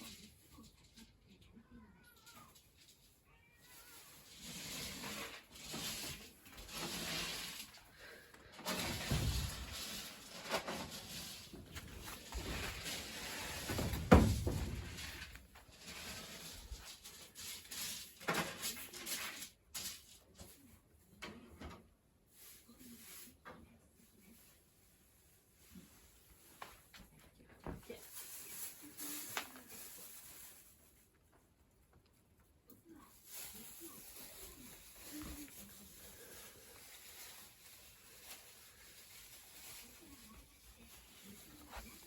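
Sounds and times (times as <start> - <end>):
soft rustling: 24.2 - 42.0.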